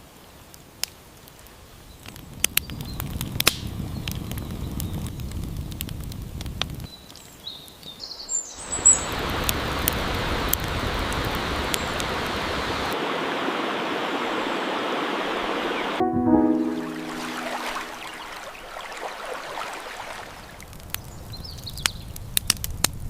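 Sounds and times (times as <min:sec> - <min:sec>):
waterfall rushing: 0:12.9 - 0:18.6
bird chirps: 0:16.7 - 0:18.7.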